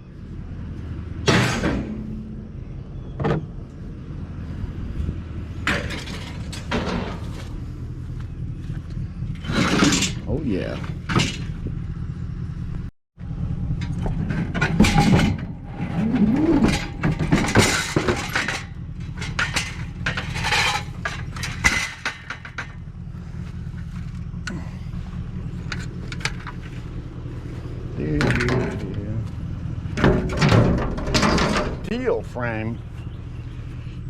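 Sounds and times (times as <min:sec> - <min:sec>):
steady low hum: 0:00.0 - 0:34.0
scrap metal clanking: 0:01.2 - 0:02.5, 0:05.0 - 0:07.7, 0:09.3 - 0:11.6, 0:13.8 - 0:31.9
metal scrape: 0:19.2 - 0:22.7.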